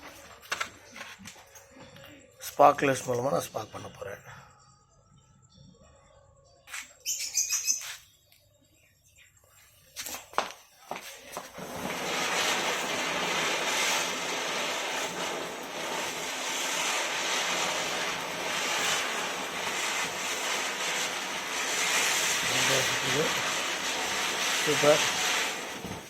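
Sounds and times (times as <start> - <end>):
ground spinner firework hissing sparks: 10.0 - 26.0.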